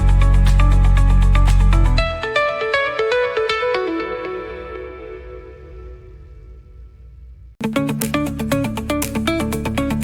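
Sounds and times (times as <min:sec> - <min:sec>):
plucked riff over beat and bass: 0:07.6 - 0:10.0.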